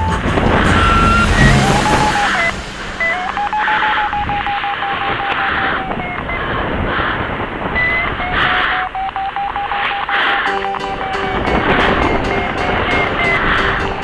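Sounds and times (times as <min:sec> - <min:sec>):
wind rush: 0:00.0 - 0:09.0, 0:10.3 - 0:14.0
variometer electronic tone: 0:00.7 - 0:06.6, 0:07.8 - 0:11.6.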